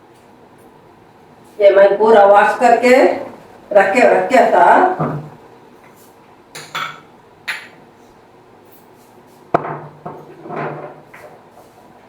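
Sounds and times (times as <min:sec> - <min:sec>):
metal and glass vessels clinking: 0:06.6 - 0:07.8.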